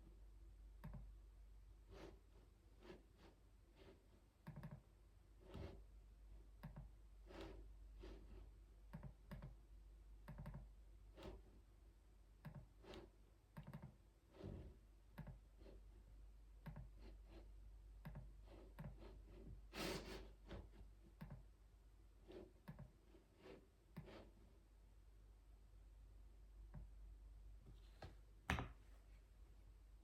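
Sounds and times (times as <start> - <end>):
faint keyboard typing: 0.8 - 1.2, 4.4 - 4.9, 6.6 - 7.0, 8.9 - 9.6, 10.2 - 10.8, 12.4 - 14.0, 15.1 - 15.5, 16.6 - 17.2, 18.0 - 19.1.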